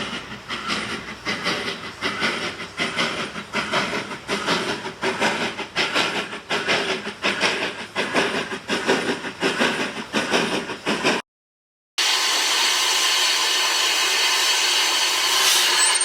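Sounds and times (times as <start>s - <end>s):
steam locomotive exhaust chuffing: 0.0s - 11.2s, 12.0s - 16.0s
hiss of steam: 12.0s - 15.9s.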